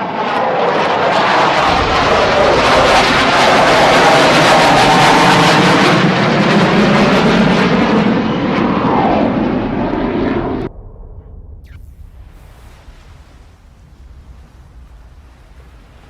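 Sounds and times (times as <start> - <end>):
jet engine roar: 0.0 - 16.0
faint rumble: 1.6 - 5.9, 7.8 - 16.0.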